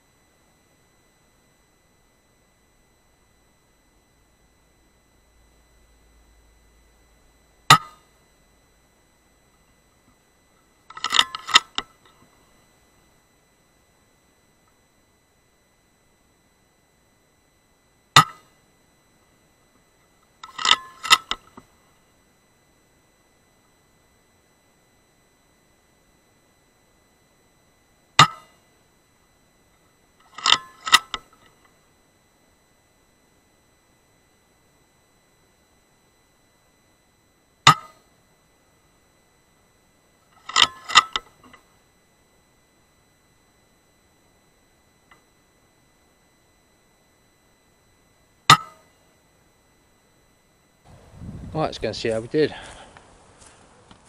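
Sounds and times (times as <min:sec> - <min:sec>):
faint high whine: 0:00.0 - 0:54.0
metallic clicks of rifle lever: 0:10.9 - 0:11.9, 0:20.4 - 0:21.6, 0:30.3 - 0:31.3, 0:40.4 - 0:41.6.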